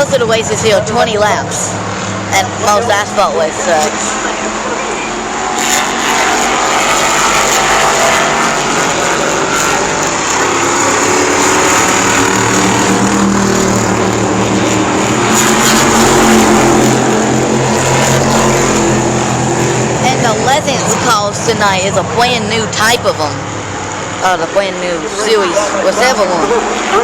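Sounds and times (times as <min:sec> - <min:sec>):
race car engines passing: 0:00.0 - 0:27.0.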